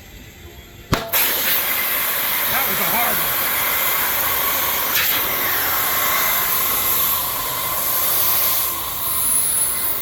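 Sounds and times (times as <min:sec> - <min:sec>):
sharp snap: 0:00.9 - 0:01.8
compressed air hissing into tire: 0:00.9 - 0:10.0
faint whistle of air: 0:04.4 - 0:10.0.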